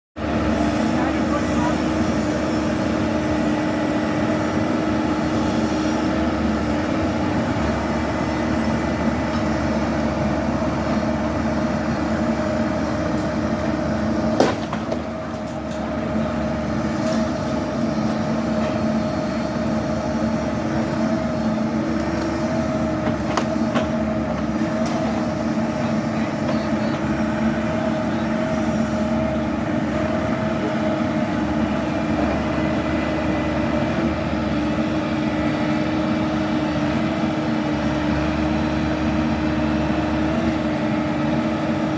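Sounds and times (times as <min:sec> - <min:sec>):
machine engine running: 0:00.2 - 0:41.9.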